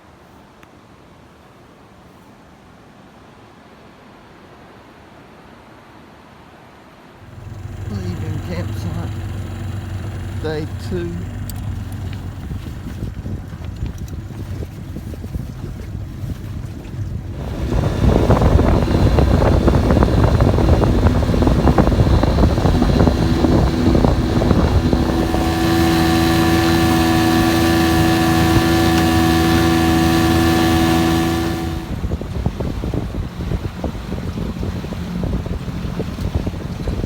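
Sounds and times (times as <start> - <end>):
rushing water: 0.0 - 37.0
wind: 0.0 - 37.0
motorboat engine: 7.2 - 37.0.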